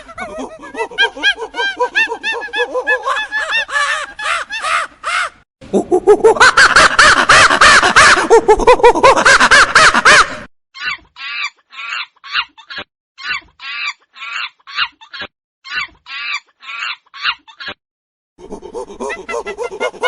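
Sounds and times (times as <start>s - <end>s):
monkeys calling: 18.4s - 20.0s.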